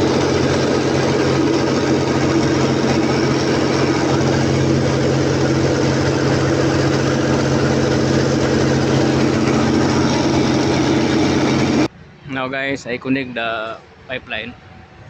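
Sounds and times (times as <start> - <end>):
diesel generator engine drone: 0.0 - 15.0.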